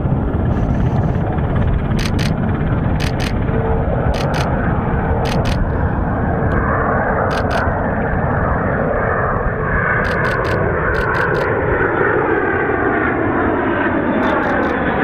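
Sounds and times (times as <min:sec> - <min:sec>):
fighter jet engine: 0:00.0 - 0:15.0
short sharp clicks: 0:02.0 - 0:02.4, 0:03.0 - 0:03.4, 0:04.2 - 0:04.5, 0:07.3 - 0:07.7.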